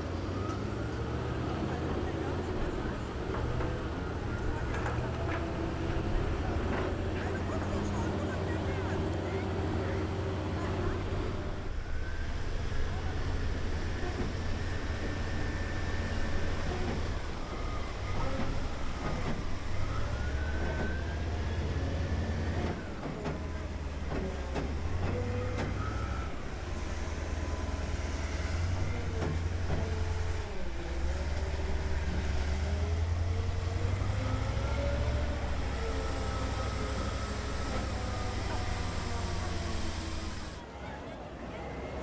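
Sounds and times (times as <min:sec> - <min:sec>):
heavy engines rumbling with whine: 0:00.0 - 0:40.9.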